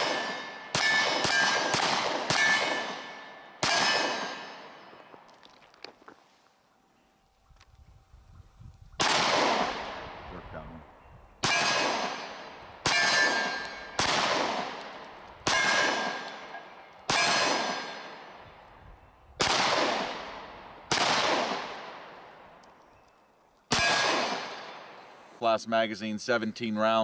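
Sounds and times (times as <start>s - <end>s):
ring of hit steel target: 0.0s - 4.8s, 11.4s - 14.0s
pistol shots echoing: 0.0s - 5.3s, 9.0s - 10.8s, 11.4s - 18.7s, 19.4s - 22.8s, 23.7s - 25.2s.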